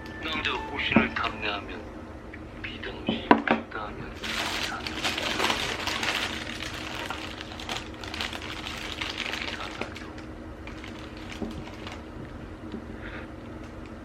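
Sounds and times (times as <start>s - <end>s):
steady low hum: 0.0s - 14.0s
faint voices: 2.6s - 6.1s, 9.4s - 10.2s.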